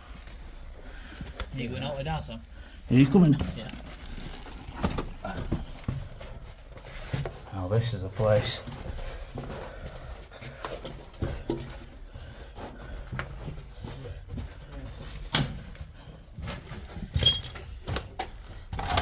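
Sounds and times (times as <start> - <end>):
footsteps on loose debris: 2.8 - 19.0
clinks: 17.1 - 17.7.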